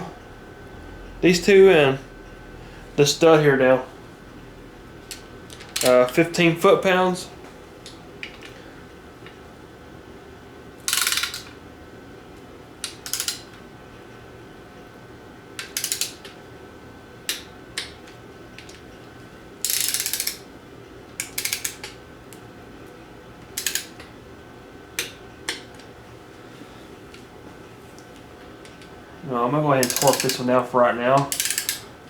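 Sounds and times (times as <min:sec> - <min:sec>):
torque wrench ratcheting clicks: 0:05.1 - 0:06.2, 0:10.9 - 0:11.5, 0:12.9 - 0:13.4, 0:15.6 - 0:16.2, 0:19.6 - 0:20.4, 0:21.2 - 0:21.9, 0:23.6 - 0:23.9, 0:29.8 - 0:30.5, 0:31.2 - 0:31.8.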